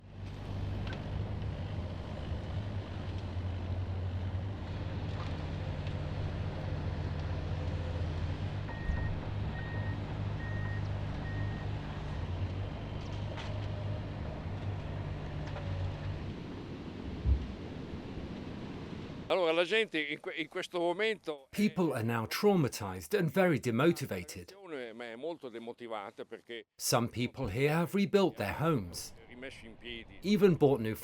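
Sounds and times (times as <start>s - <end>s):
heavy vehicle engine humming: 0.0s - 19.3s
reversing beeps: 8.7s - 11.7s.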